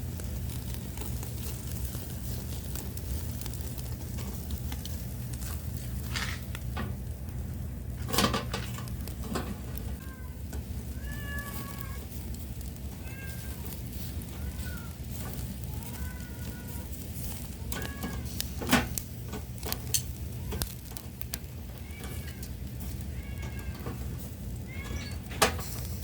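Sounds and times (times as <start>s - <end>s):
steady low rumble: 0.0s - 24.8s
cat meowing: 10.0s - 12.2s, 12.9s - 17.0s, 17.6s - 18.4s, 21.7s - 25.3s.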